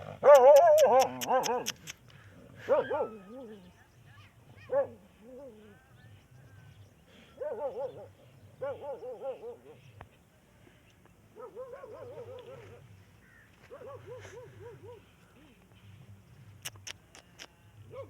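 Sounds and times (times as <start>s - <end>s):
dog yelping: 0.2s - 1.9s, 2.7s - 3.4s
sharp click: 16.6s - 17.5s.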